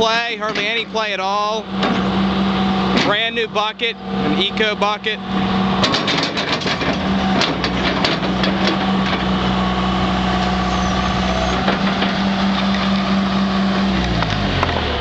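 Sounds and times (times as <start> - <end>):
diesel engine humming: 0.0 - 15.0
sharp knocks: 5.8 - 9.3.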